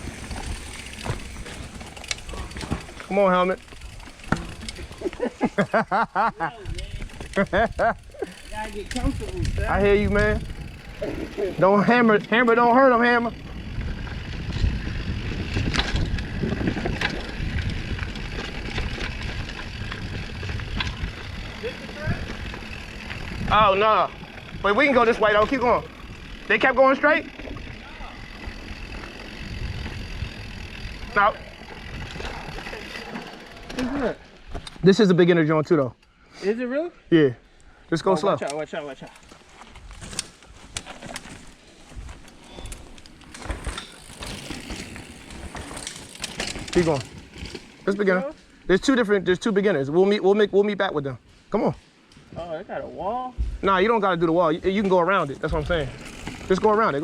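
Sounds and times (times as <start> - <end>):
bike rattling over rough ground: 0.0 - 36.0, 38.0 - 57.0
wind rumbling on microphone: 6.6 - 11.6, 13.2 - 26.5, 27.4 - 33.0.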